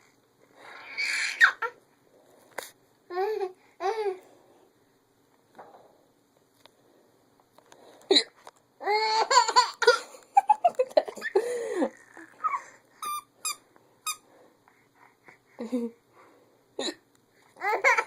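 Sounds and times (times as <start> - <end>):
child laughing and squealing: 0.9 - 1.8.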